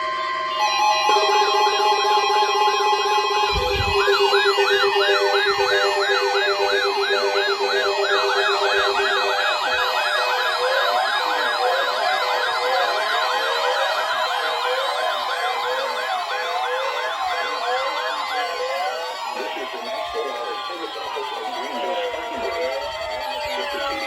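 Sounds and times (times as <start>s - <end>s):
electronic sirens yelping: 0.0s - 24.0s
steady pulsing tone: 1.1s - 9.6s.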